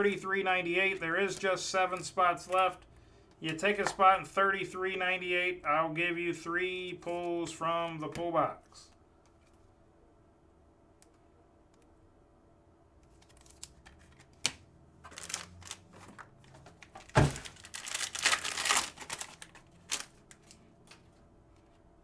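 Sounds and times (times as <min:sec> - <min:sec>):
foil wrapper tearing and crinkling: 0:15.1 - 0:16.0, 0:17.0 - 0:20.6.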